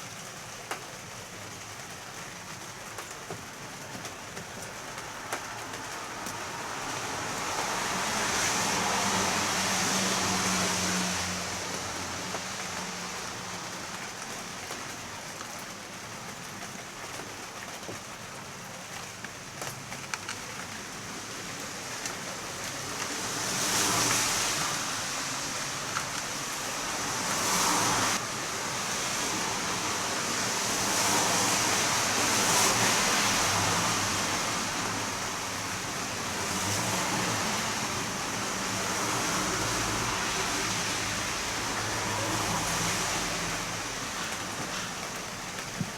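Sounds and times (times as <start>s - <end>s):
heavy rain falling: 0.0s - 45.9s.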